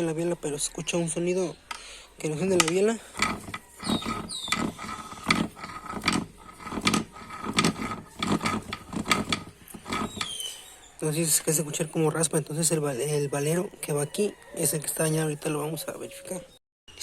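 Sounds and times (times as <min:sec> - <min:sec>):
crankshaft scraping and clicking: 0:01.7 - 0:10.4.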